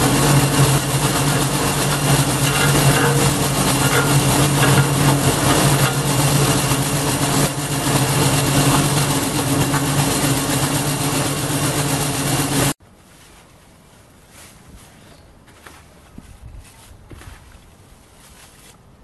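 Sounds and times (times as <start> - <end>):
wood chipper engine running: 0.0 - 12.8.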